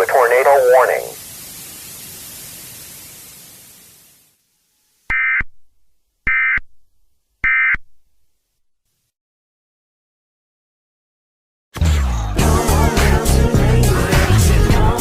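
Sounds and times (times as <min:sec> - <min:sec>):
static hiss: 0:00.0 - 0:05.5
data tone bursts: 0:05.1 - 0:05.5, 0:06.3 - 0:06.6, 0:07.4 - 0:07.8.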